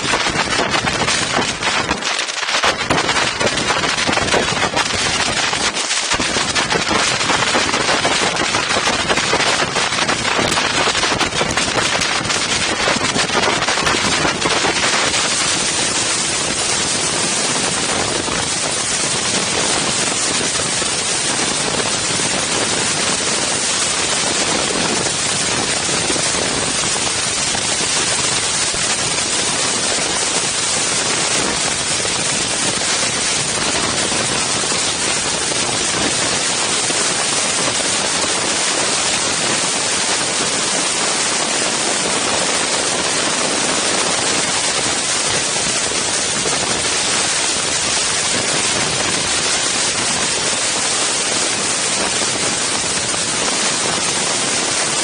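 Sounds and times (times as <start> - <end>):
wind buffeting microphone: 0.0 - 55.0.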